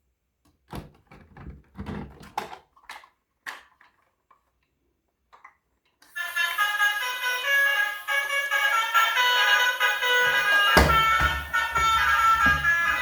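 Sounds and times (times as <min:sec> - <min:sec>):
toys and packaging being handled: 0:00.5 - 0:06.3, 0:09.4 - 0:13.0
melody: 0:06.2 - 0:13.0.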